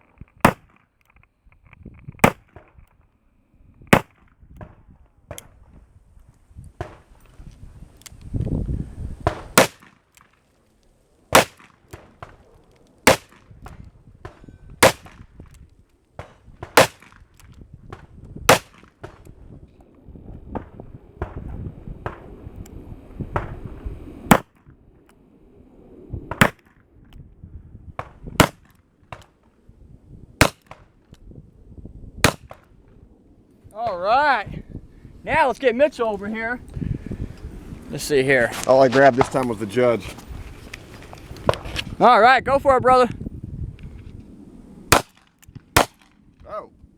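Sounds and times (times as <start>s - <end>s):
revolver shots: 24.3s - 24.5s.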